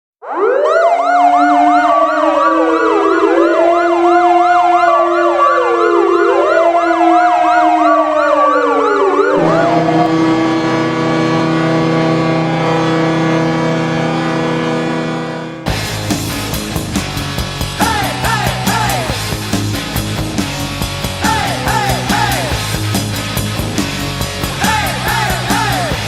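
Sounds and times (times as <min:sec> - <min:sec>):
fast yelping siren: 0:00.2 - 0:13.2
wailing siren: 0:00.2 - 0:15.6
goal horn: 0:09.4 - 0:15.6
sustained music chords: 0:09.4 - 0:24.6.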